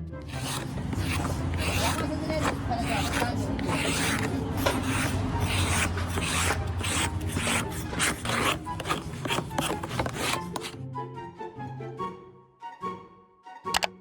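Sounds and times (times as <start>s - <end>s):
faint background music: 0.0s - 14.0s
rasping scrape strokes: 0.2s - 10.8s.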